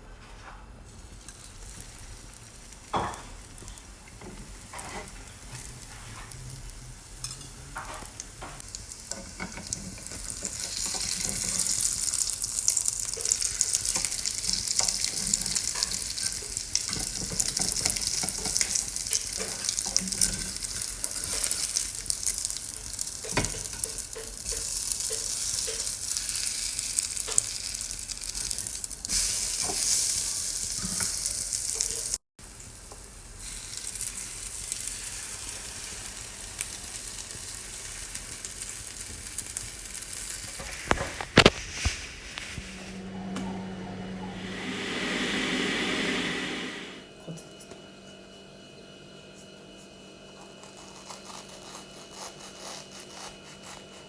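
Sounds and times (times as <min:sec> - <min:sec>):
food sizzling in a pan: 0:00.8 - 0:42.9.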